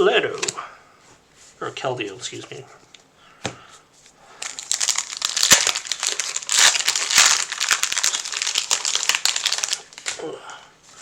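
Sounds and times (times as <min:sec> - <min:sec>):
foil wrapper crinkling: 0:04.3 - 0:10.2.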